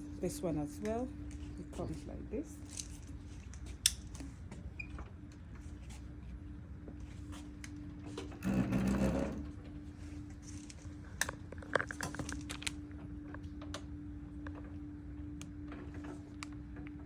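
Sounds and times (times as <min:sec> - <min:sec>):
steady low hum: 0:00.0 - 0:17.0
plastic packaging rustling: 0:11.6 - 0:12.8.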